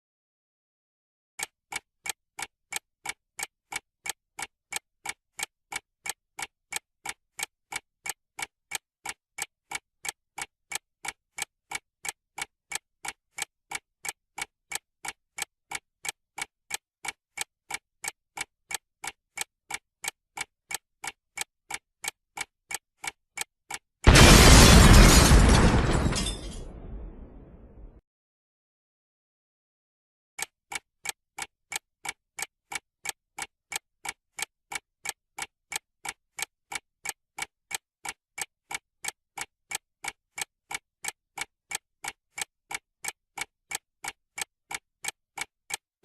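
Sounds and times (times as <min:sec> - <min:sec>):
clock ticking: 0:01.4 - 0:25.5, 0:30.4 - 0:46.0
loud explosion: 0:24.1 - 0:28.0.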